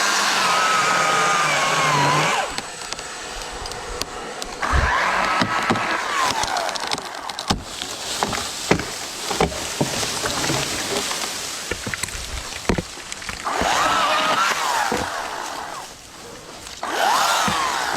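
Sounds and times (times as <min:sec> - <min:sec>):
chainsaw cutting wood: 0:00.0 - 0:17.9
sharp knocks and cracks: 0:03.7 - 0:15.8, 0:16.6 - 0:17.9.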